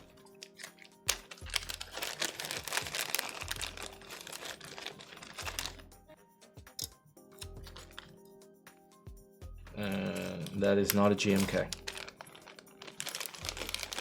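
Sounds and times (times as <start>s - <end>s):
small plastic parts clattering: 0.4s - 5.8s, 7.7s - 8.1s, 10.4s - 14.0s.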